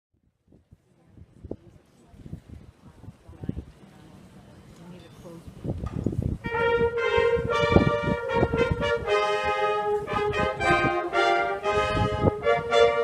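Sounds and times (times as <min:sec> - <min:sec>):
marching band brass chords: 0:06.4 - 0:13.0.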